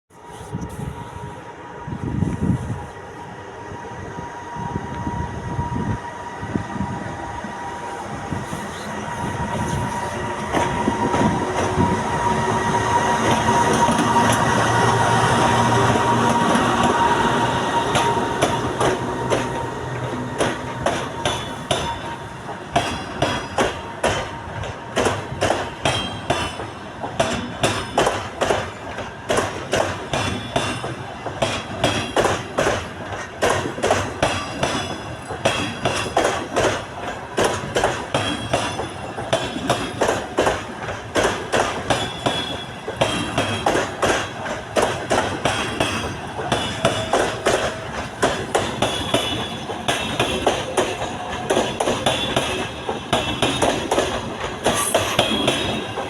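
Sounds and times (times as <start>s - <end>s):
electric locomotive whine: 0.1s - 56.0s
train wheels clacking over rail joints: 8.3s - 56.0s.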